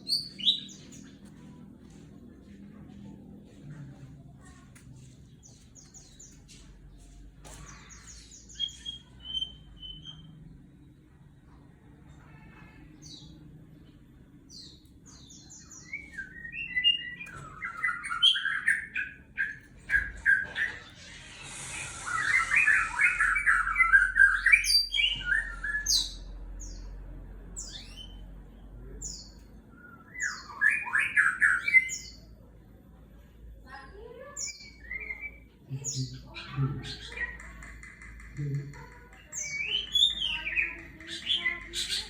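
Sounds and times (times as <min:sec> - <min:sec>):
bird singing trills and whistles: 0:07.8 - 0:10.4, 0:14.5 - 0:21.0, 0:21.7 - 0:26.3, 0:29.1 - 0:32.2, 0:39.4 - 0:42.0
hiss: 0:21.0 - 0:23.0.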